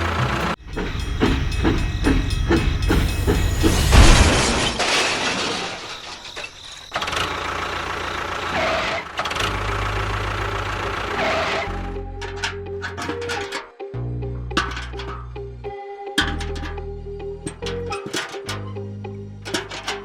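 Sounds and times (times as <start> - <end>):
small engine running rhythmically: 0.0 - 3.9, 7.1 - 13.0.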